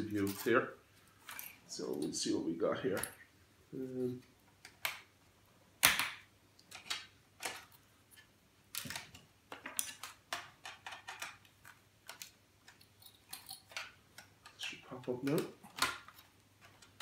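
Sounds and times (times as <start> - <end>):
metal laptop parts clicking: 5.8 - 17.0.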